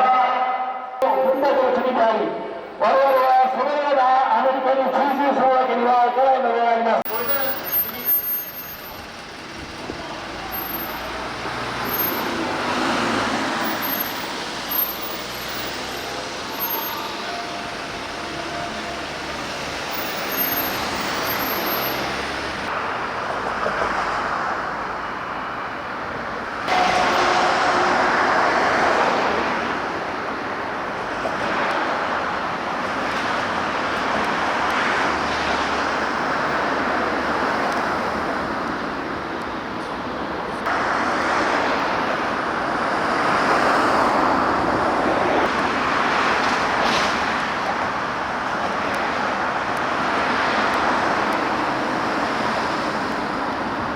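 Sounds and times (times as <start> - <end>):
vehicles passing on a street: 0.0 - 53.9.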